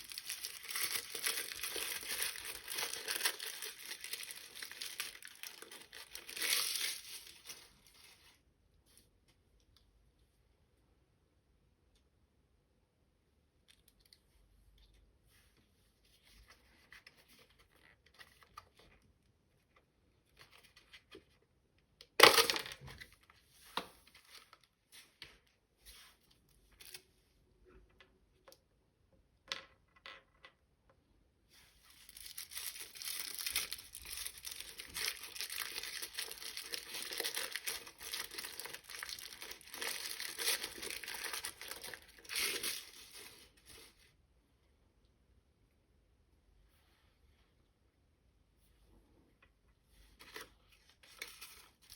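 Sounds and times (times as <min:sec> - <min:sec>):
packaging tearing and crinkling: 0:00.0 - 0:07.7, 0:22.2 - 0:22.8, 0:32.1 - 0:43.8.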